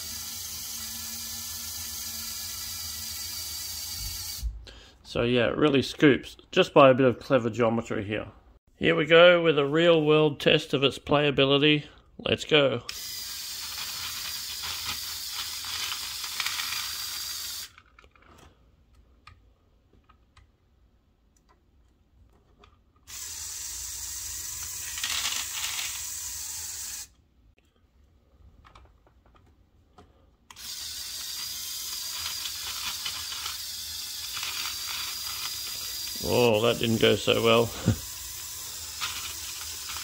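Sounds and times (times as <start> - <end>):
toy motor whirring: 0.0 - 4.5, 12.9 - 18.0, 23.0 - 27.2, 30.5 - 40.0.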